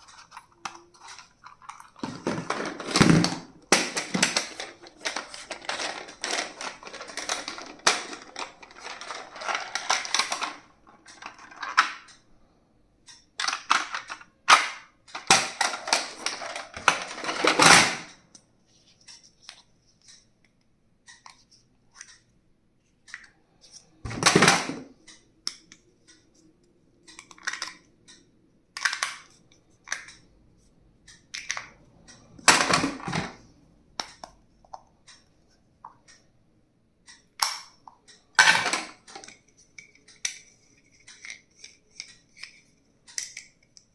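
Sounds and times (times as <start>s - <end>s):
packaging crinkling: 0.0s - 10.6s.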